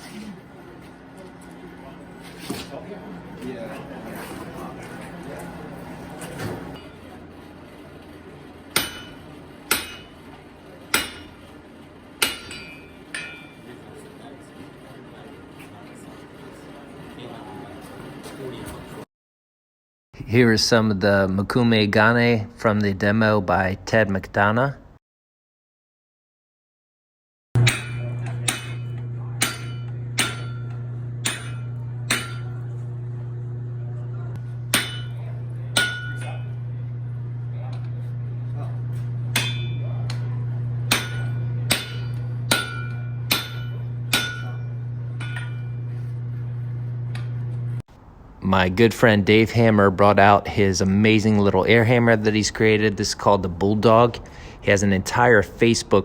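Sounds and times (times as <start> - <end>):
steady low hum: 0.0 - 19.0, 27.6 - 56.0
hammer blows on steel: 27.6 - 32.7, 34.4 - 36.7, 39.0 - 40.3, 40.9 - 45.9.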